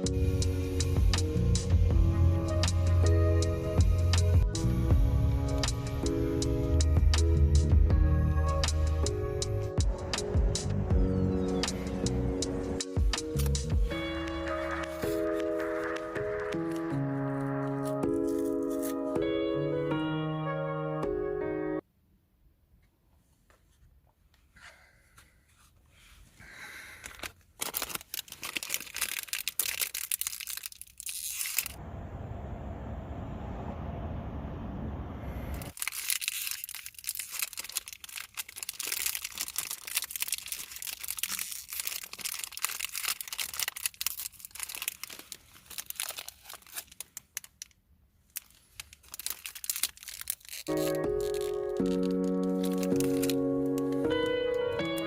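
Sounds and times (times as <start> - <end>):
plastic wrapper crinkling and tearing: 13.2 - 13.8, 14.4 - 19.2, 27.0 - 31.8, 35.7 - 55.0.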